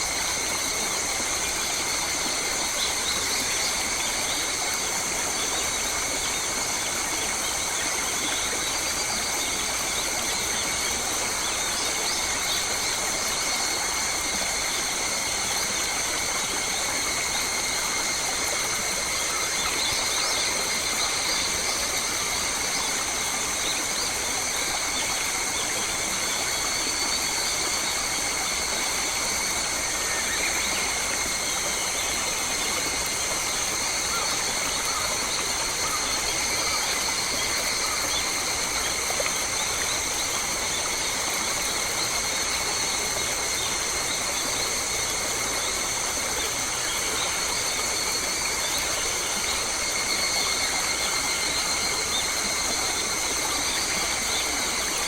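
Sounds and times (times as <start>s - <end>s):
high-pitched insect drone: 0.0s - 55.0s.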